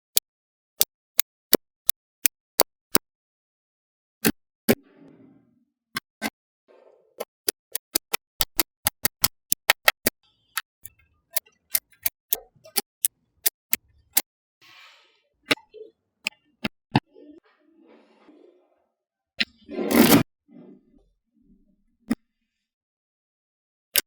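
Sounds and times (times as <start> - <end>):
magnetic balls clicking together: 7.2 - 13.8.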